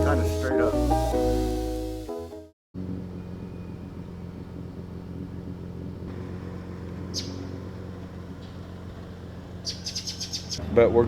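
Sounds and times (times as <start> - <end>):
car engine humming: 0.0 - 11.0
high chirp: 7.1 - 7.5.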